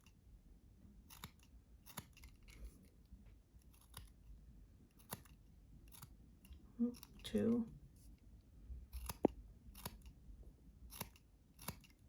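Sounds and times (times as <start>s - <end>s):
scissors snipping: 1.0s - 2.8s, 3.6s - 4.2s, 4.9s - 7.2s, 8.9s - 10.2s, 10.9s - 12.0s.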